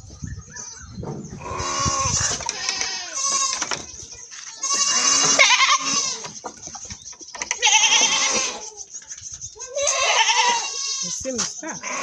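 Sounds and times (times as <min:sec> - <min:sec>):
goats bleating: 0:01.4 - 0:03.9, 0:04.6 - 0:06.4, 0:07.5 - 0:08.7, 0:09.6 - 0:12.0.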